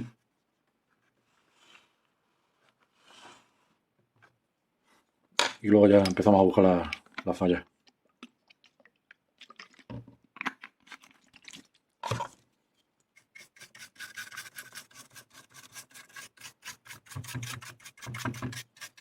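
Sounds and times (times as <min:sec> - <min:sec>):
brush scraping circuit board: 0:13.2 - 0:19.0.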